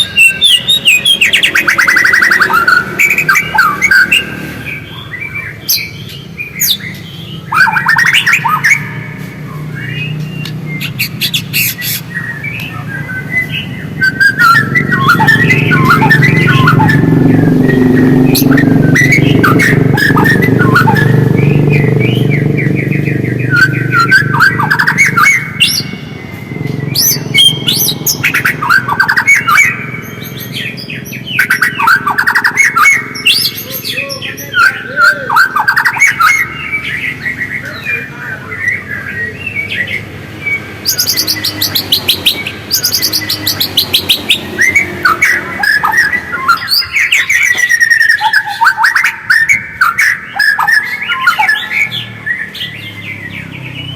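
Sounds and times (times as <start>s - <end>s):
songbird whistling and trilling: 0.0s - 53.9s.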